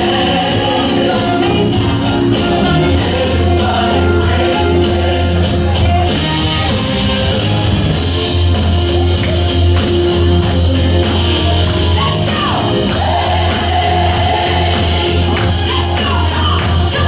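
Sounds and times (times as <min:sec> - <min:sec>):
person singing: 0:00.0 - 0:06.4
beat and heavy bass: 0:00.0 - 0:17.0.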